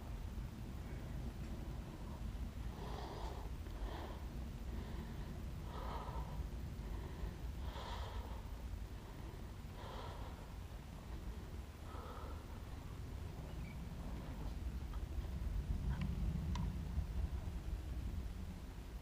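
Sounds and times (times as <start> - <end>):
low rumble: 0.0 - 19.0
person breathing heavily: 1.6 - 13.0.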